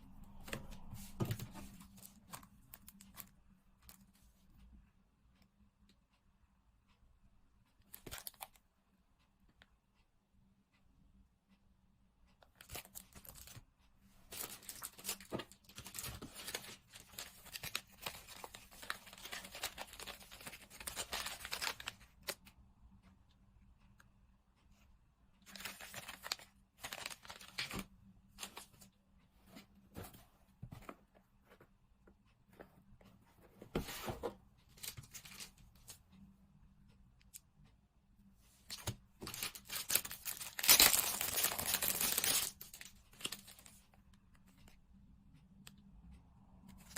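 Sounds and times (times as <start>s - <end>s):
packaging tearing and crinkling: 39.3s - 42.8s.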